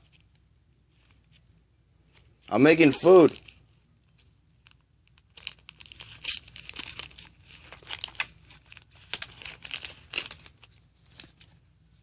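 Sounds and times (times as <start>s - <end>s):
foil wrapper crinkling and tearing: 2.5s - 11.5s.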